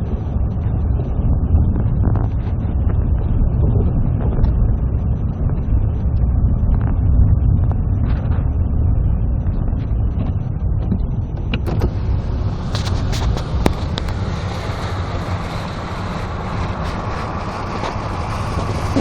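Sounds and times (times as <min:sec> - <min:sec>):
car engine and road rumble: 0:00.0 - 0:19.0.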